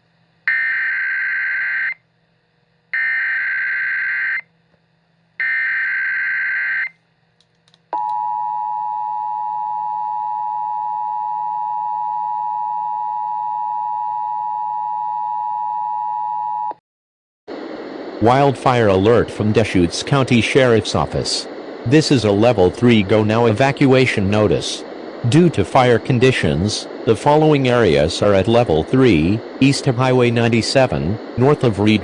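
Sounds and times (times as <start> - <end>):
data bursts: 18.3 - 32.0.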